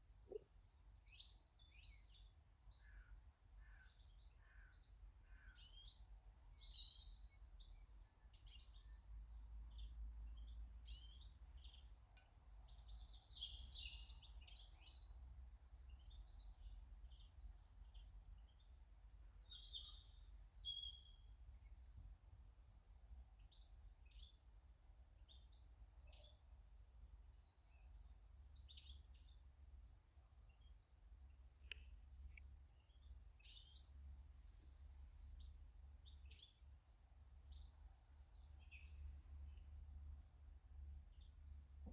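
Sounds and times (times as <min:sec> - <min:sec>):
birds chirping and singing: 0:38.4 - 0:39.8.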